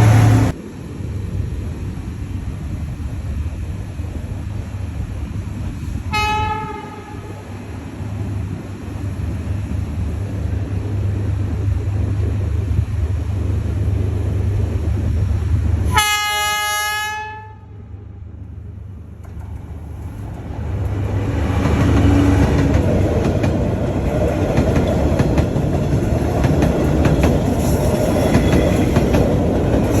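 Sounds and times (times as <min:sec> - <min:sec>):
train rumble: 0:00.0 - 0:30.0
locomotive horn: 0:06.1 - 0:07.3, 0:15.9 - 0:17.8.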